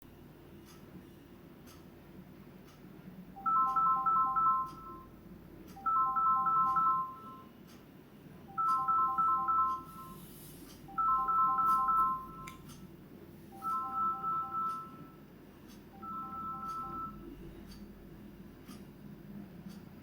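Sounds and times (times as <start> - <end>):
electronic beeping ringtone melody: 3.4 - 5.1, 5.8 - 7.5, 8.5 - 10.3, 10.9 - 12.6, 13.6 - 15.2, 15.9 - 17.3.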